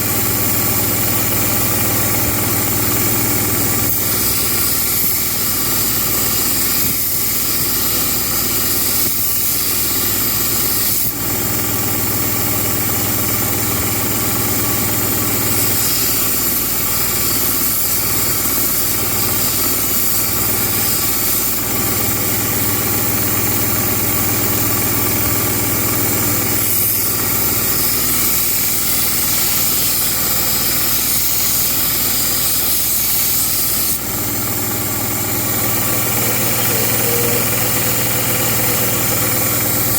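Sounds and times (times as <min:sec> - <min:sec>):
belt grinder motor hum: 0:00.0 - 0:39.9
knife blade grinding on belt: 0:35.5 - 0:39.9.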